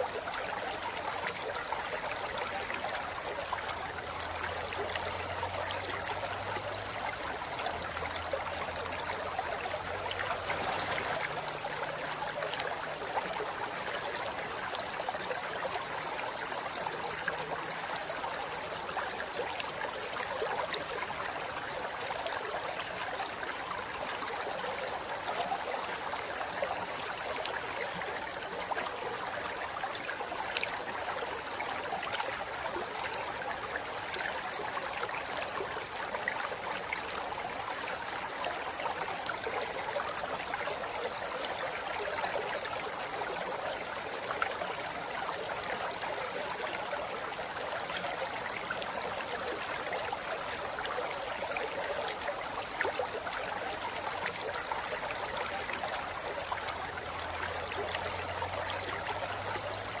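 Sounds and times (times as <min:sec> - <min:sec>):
river flowing over rocks: 0:00.0 - 1:00.0.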